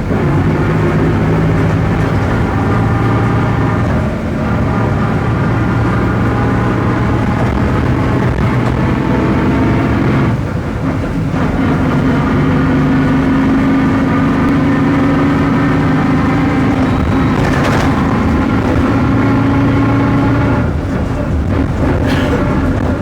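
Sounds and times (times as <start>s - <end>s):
bus engine running: 0.0s - 23.0s
differential droning: 0.0s - 23.0s
brief noise: 16.4s - 19.6s.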